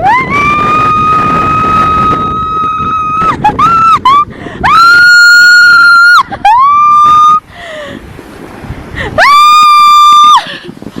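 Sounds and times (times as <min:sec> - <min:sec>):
child screaming: 0:04.6 - 0:07.3, 0:09.2 - 0:10.4.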